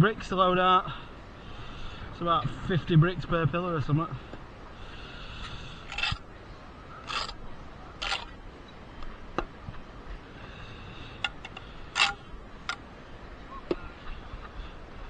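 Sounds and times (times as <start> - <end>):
bricks clacking and scraping: 5.8 - 6.2, 7.1 - 7.4, 8.0 - 8.4, 11.2 - 12.2.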